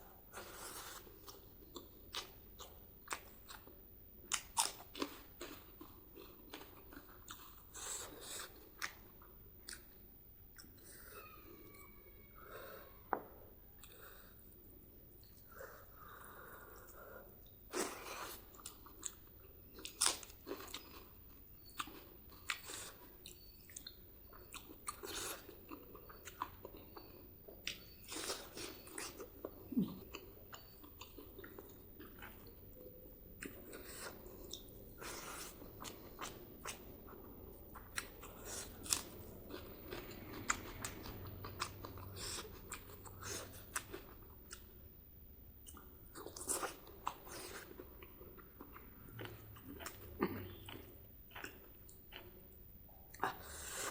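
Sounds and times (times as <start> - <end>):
chewing and biting food: 17.8 - 32.6, 33.4 - 44.8, 45.6 - 53.9.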